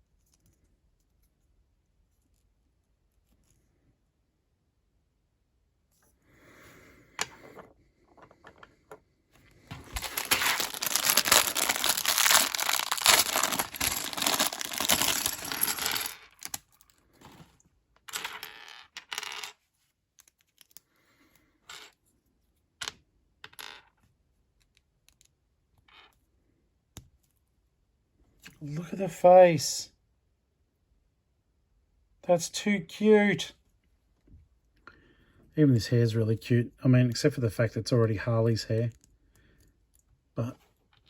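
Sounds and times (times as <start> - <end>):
plastic pieces clicking: 9.7 - 16.9
plastic pieces rustling and clattering: 9.7 - 17.6.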